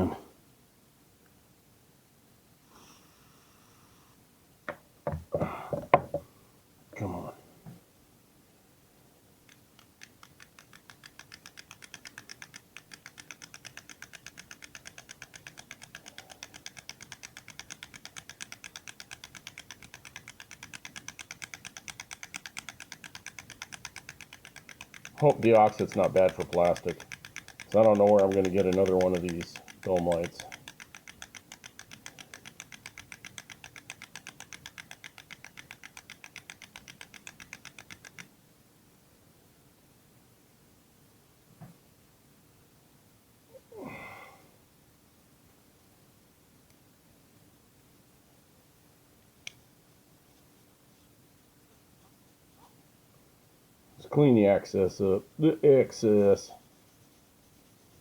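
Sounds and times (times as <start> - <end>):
rapid even clicking: 9.4 - 38.3.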